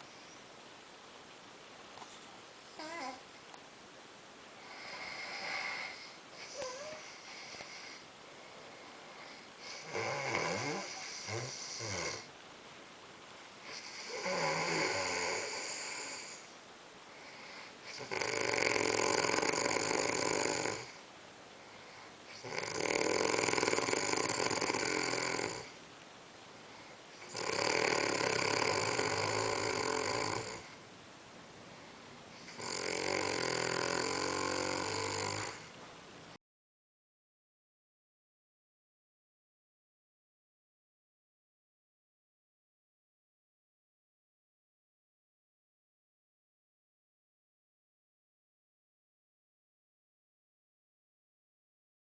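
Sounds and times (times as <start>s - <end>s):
man snoring: 2.8s - 3.2s, 4.6s - 8.0s, 9.0s - 12.3s, 13.7s - 16.5s, 17.3s - 21.0s, 22.3s - 25.8s, 27.2s - 30.8s, 32.4s - 35.7s.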